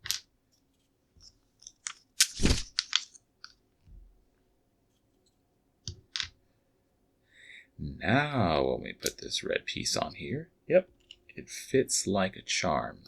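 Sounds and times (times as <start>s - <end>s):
plastic bricks clicking and rattling: 1.6s - 3.2s.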